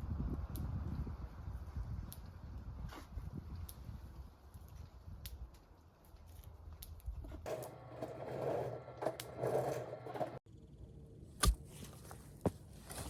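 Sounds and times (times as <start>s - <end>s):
scraping handling noises: 7.2s - 10.4s.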